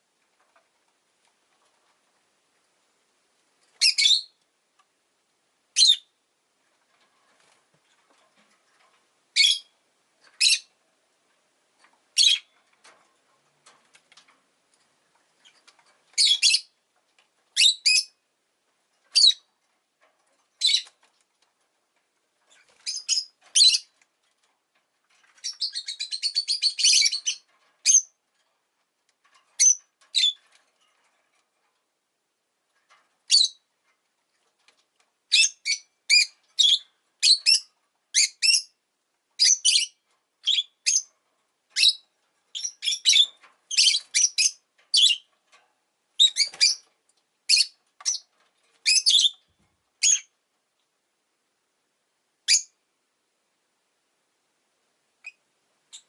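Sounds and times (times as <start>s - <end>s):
lovebird chirping: 3.8s - 4.4s, 5.8s - 6.1s, 9.4s - 9.7s, 12.2s - 12.5s, 16.2s - 16.7s, 17.6s - 18.2s, 22.8s - 23.9s, 25.4s - 28.1s, 29.6s - 30.4s, 33.3s - 33.6s, 35.3s - 38.7s, 39.4s - 41.1s, 41.8s - 45.3s, 46.2s - 46.8s, 47.5s - 48.2s, 48.8s - 49.4s, 50.0s - 50.3s, 52.5s - 52.8s.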